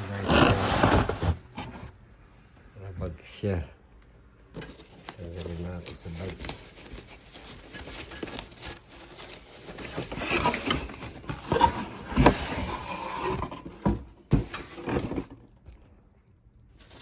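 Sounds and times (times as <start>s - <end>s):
plastic bag rustling: 4.7s - 13.6s, 16.8s - 17.0s.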